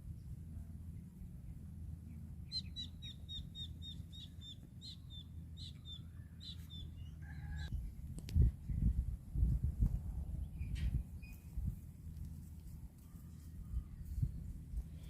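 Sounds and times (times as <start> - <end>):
small bird chirping: 2.4 - 7.7.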